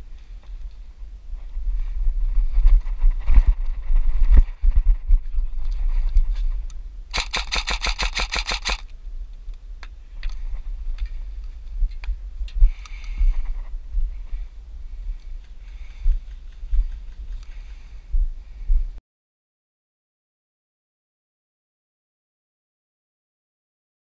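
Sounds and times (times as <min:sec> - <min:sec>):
low wind rumble on microphone: 0:00.0 - 0:19.0
airsoft gun firing burst: 0:07.1 - 0:08.8.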